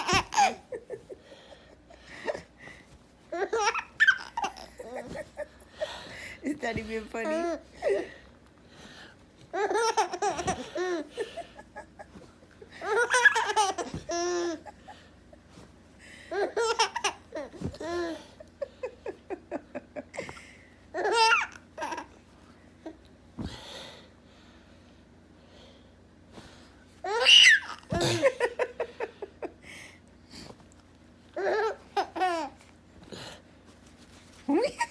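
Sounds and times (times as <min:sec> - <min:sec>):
baby laughing: 0:00.0 - 0:00.7, 0:03.3 - 0:05.5, 0:09.5 - 0:14.9, 0:16.3 - 0:18.4, 0:21.0 - 0:22.1, 0:27.1 - 0:28.3, 0:31.4 - 0:32.6.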